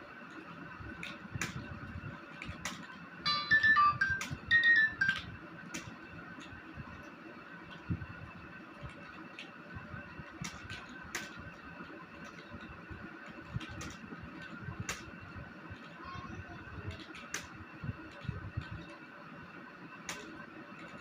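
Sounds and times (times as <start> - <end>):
steady hum: 0.0 - 21.0
keyboard keys clicking: 2.4 - 5.9.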